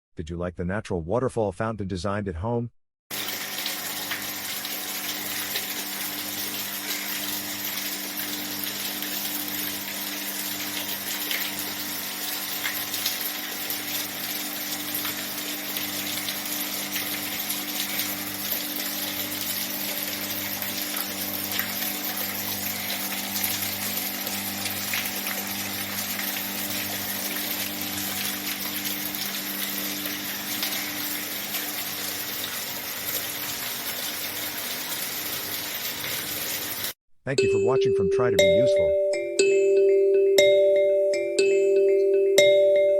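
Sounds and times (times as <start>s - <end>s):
electric pump humming: 3.1s - 36.9s
fountain water splashing: 3.1s - 36.9s.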